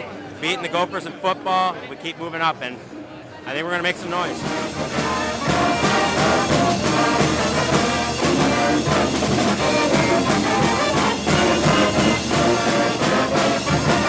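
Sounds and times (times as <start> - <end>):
brass band playing with drums: 3.8 - 14.0.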